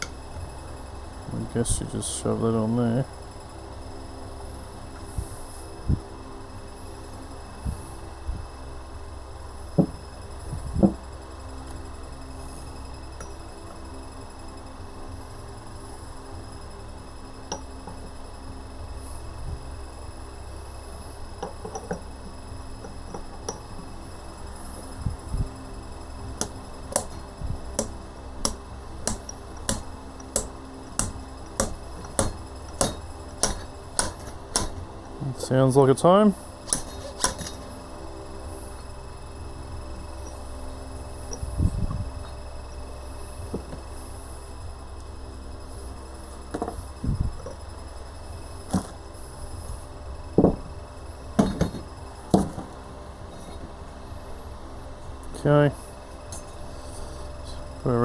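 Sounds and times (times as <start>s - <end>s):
steady low hum: 0.0s - 58.0s
seal driver knocking on fork: 26.4s - 27.2s, 27.8s - 34.8s, 36.7s - 37.6s, 51.4s - 52.7s.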